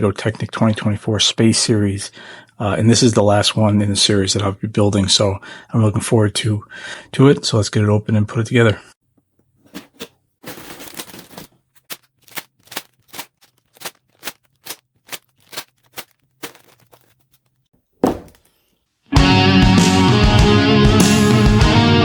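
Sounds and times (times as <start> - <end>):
cardboard box ripping: 10.5 - 17.4
loud rock guitar music: 19.1 - 22.0.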